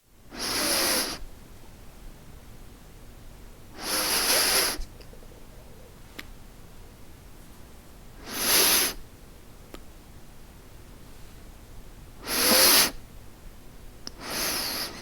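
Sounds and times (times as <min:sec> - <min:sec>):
person sniffing through nose: 0:00.3 - 0:01.3, 0:03.8 - 0:06.0, 0:08.2 - 0:09.0, 0:12.2 - 0:13.0, 0:14.1 - 0:15.0.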